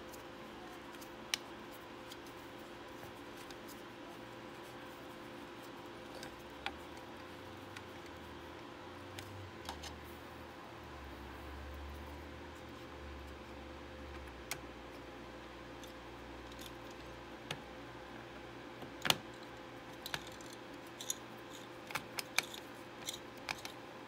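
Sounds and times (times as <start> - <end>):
faint low hum: 0.0 - 24.0
computer parts clicking and tapping: 18.8 - 23.8.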